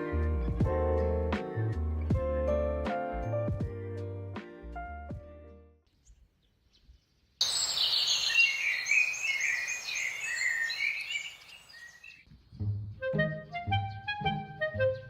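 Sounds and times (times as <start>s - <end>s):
birds chirping: 6.0s - 12.3s
outdoor hiss: 7.4s - 12.2s.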